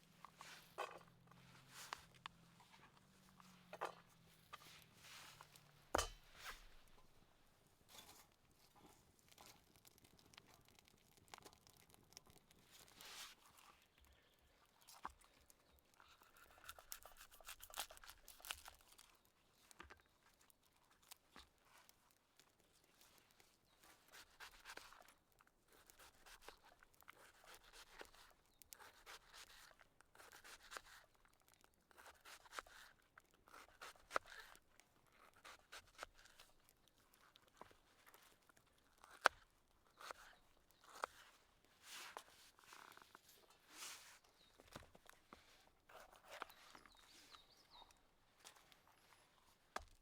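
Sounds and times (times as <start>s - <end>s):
rustling and scraping: 0.2s - 7.2s, 7.9s - 9.6s, 40.0s - 47.4s.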